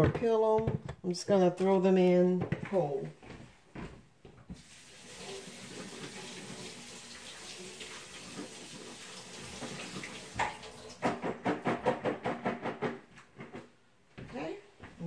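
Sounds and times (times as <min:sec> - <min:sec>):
kitchen faucet running: 0:04.6 - 0:11.1.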